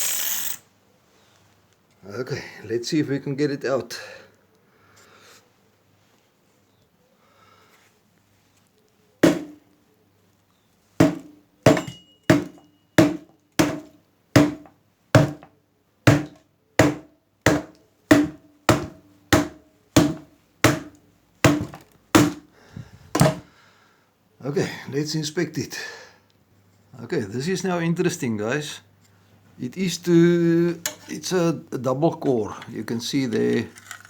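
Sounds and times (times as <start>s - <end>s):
hammer striking metal: 11.0s - 14.6s.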